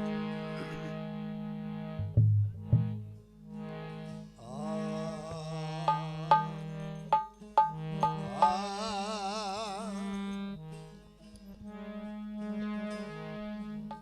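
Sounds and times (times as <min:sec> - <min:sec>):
sustained melody line: 0:00.0 - 0:14.0
hand drum strokes: 0:02.0 - 0:03.2, 0:05.9 - 0:08.7.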